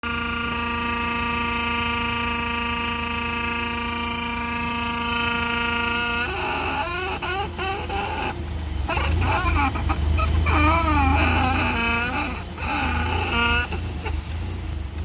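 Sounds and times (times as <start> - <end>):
pitched mechanical whine: 0.0 - 15.0
short bending cries: 4.5 - 14.8.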